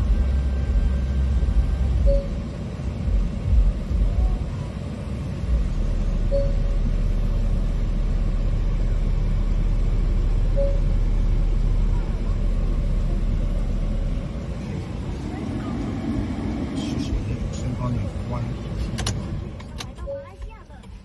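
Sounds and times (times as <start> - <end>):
low rumble: 0.0 - 19.9
short electronic beep: 2.0 - 2.5, 6.2 - 6.8, 10.5 - 11.0.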